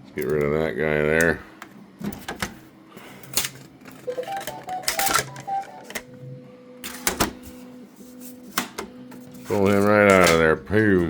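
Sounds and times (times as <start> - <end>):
beeps at changing pitches: 4.1 - 5.9.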